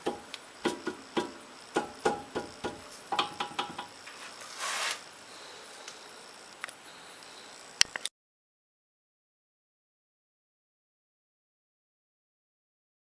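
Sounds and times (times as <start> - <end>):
brief hiss: 4.4 - 5.1.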